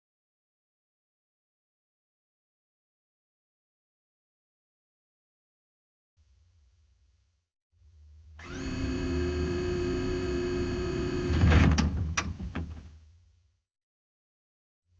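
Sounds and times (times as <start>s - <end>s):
printer running: 8.4s - 11.4s
mechanical whine: 8.4s - 11.8s.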